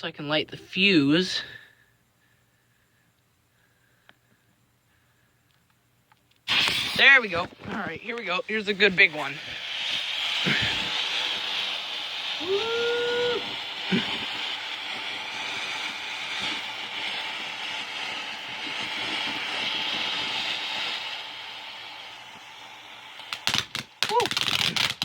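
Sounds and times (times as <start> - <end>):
firework fountain hissing: 0.6 - 1.6, 6.4 - 25.0
sharp pop: 6.5 - 7.8.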